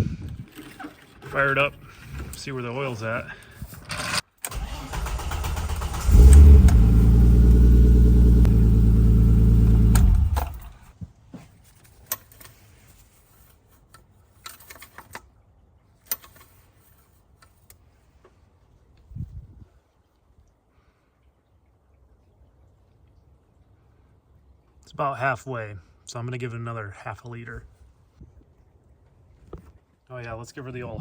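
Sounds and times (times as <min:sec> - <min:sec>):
car engine starting and idling: 0:04.4 - 0:10.9.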